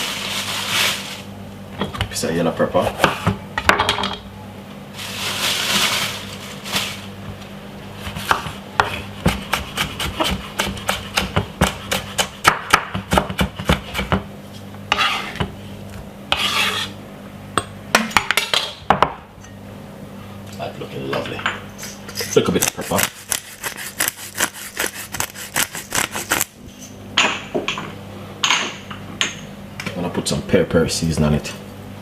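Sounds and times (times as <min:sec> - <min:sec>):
knife scraping across board: 0:14.9 - 0:15.5, 0:16.3 - 0:17.0, 0:22.1 - 0:26.5.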